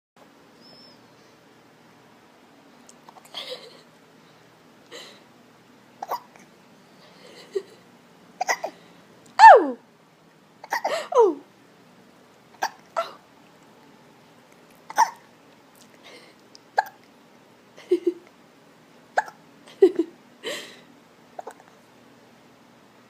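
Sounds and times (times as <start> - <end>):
short sharp hiccups: 6.0 - 6.4, 8.4 - 8.8, 9.4 - 9.8, 12.6 - 13.2, 14.9 - 15.2, 16.7 - 17.0, 19.2 - 19.4, 21.4 - 21.7.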